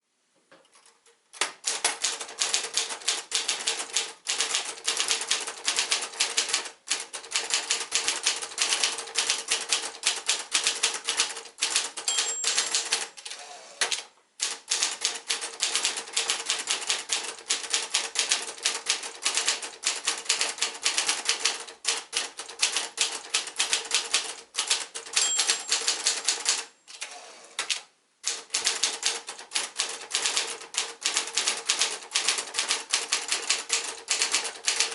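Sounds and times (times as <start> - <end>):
typewriter key strikes: 24.6 - 26.6.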